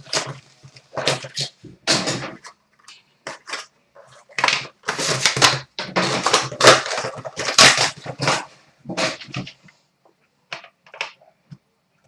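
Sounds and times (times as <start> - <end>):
wrapper crinkling and tearing: 3.3 - 9.5.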